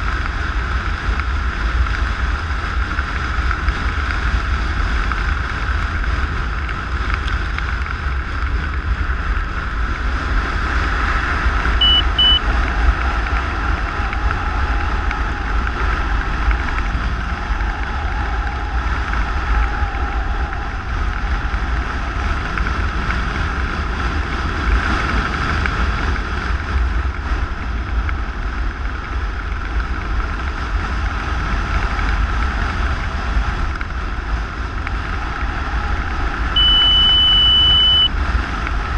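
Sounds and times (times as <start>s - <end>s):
wind rushing over microphone: 0.0s - 38.9s
short high beeps: 11.8s - 12.4s, 36.6s - 38.1s.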